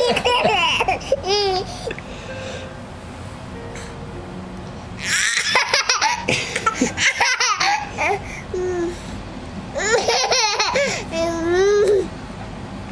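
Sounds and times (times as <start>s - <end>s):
baby giggling: 0.0s - 2.0s, 5.0s - 8.8s, 9.8s - 12.1s.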